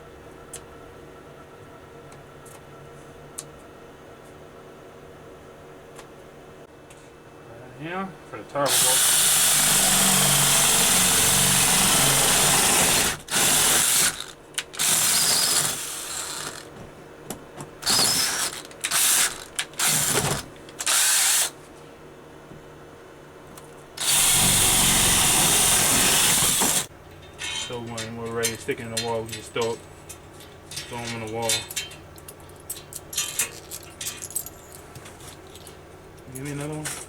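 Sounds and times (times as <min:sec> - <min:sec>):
power drill drilling wood: 0:08.7 - 0:16.7, 0:17.8 - 0:21.5, 0:24.0 - 0:26.9.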